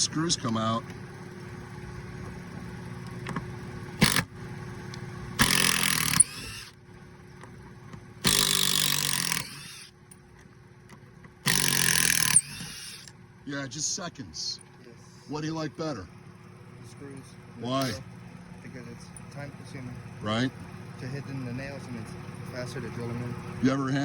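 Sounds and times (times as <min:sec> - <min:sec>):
impact driver hammering: 0:04.0 - 0:04.3, 0:05.4 - 0:06.8, 0:08.2 - 0:09.9, 0:11.4 - 0:13.1.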